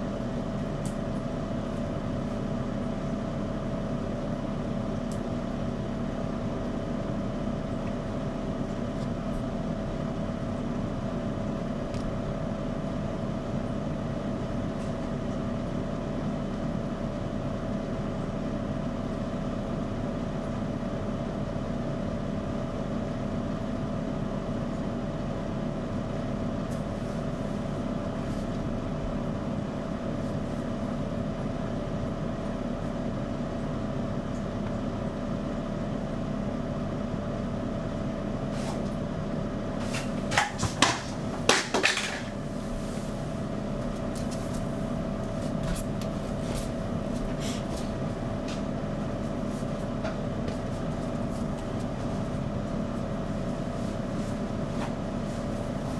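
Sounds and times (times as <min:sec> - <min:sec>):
knocks and clatters: 0:39.8 - 0:42.4.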